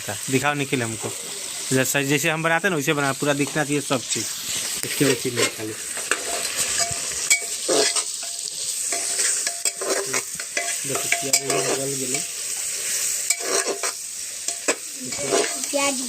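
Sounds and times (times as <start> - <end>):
onions sizzling in oil: 0.0 - 16.0
spoon scraping and knocking pot: 5.4 - 12.3, 13.3 - 15.7.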